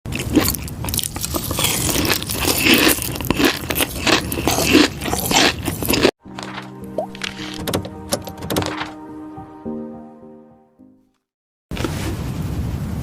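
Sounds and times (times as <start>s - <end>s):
crunchy chewing: 0.1s - 7.6s
music: 6.2s - 11.3s.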